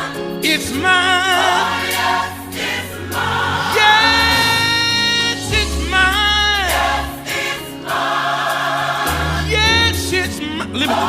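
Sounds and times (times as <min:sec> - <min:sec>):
gospel singers in harmony: 0:00.0 - 0:11.0
band accompaniment: 0:03.8 - 0:08.1.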